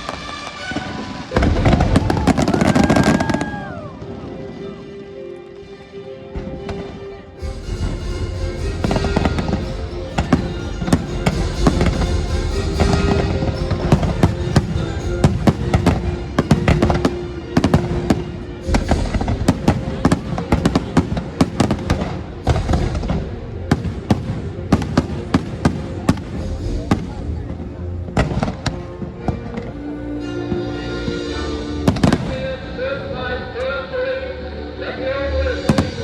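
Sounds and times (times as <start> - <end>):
fireworks bangs and crackles: 0.0 - 4.6, 7.4 - 29.7, 31.9 - 32.5
music with long held notes: 0.0 - 36.0.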